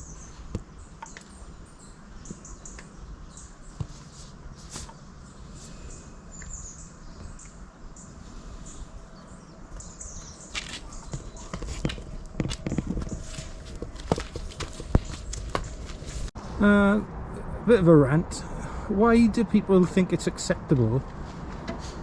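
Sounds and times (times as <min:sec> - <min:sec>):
small birds chirping: 0:00.0 - 0:16.8
footsteps: 0:10.5 - 0:16.4.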